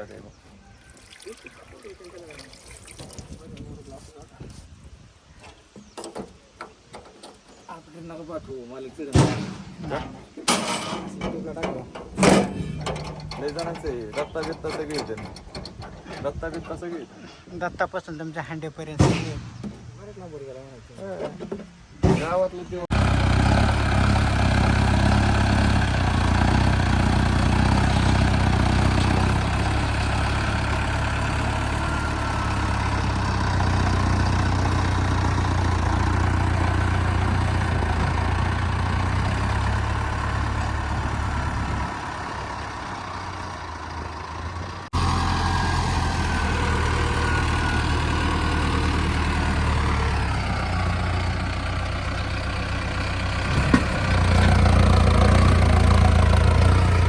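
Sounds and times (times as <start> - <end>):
heavy engine idling: 22.9 - 57.0.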